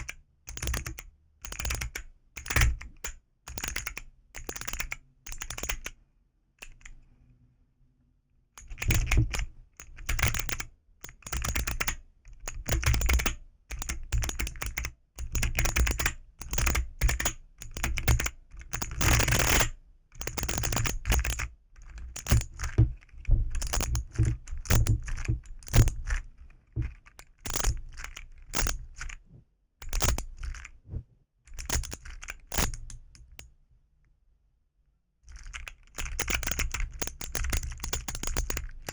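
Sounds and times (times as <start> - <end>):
keycaps clacking: 20.4 - 29.1.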